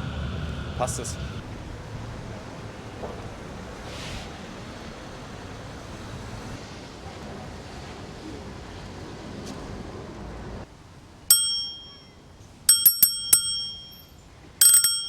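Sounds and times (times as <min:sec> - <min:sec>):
city noise: 0:00.0 - 0:15.0
small bell ringing: 0:11.3 - 0:15.0.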